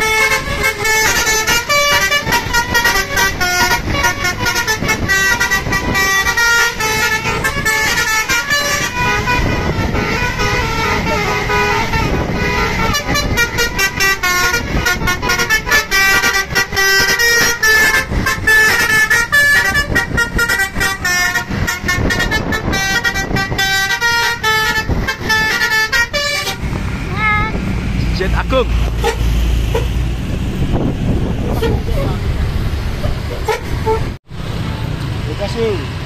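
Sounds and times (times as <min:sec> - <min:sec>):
bus horns playing musical notes: 0:00.0 - 0:27.6, 0:28.8 - 0:34.2
bus engines: 0:00.0 - 0:36.0.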